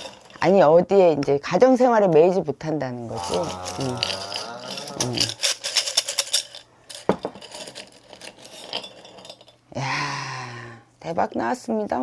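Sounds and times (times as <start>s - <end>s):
wooden sticks rattling in a tube: 3.1s - 9.5s.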